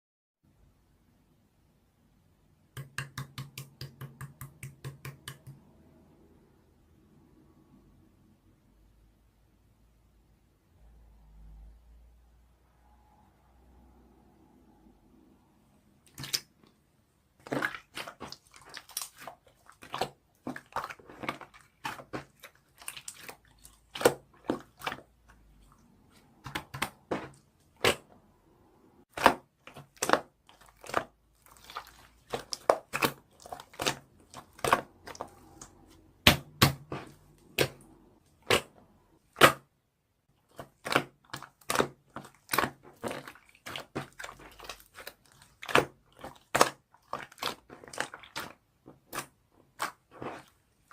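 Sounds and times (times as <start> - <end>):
crunching and crinkling: 17.4 - 28.1, 29.1 - 38.9, 40.3 - 50.9.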